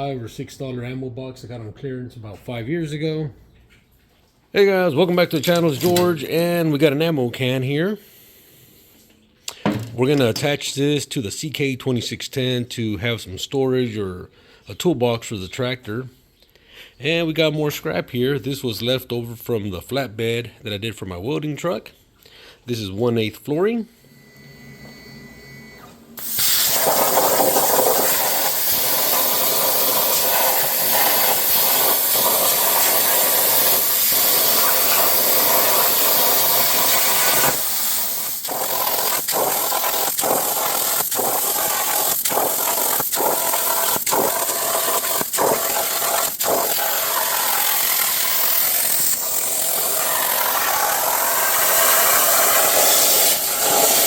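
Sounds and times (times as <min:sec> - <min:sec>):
power tool cutting steel plate: 0:26.2 - 0:54.0.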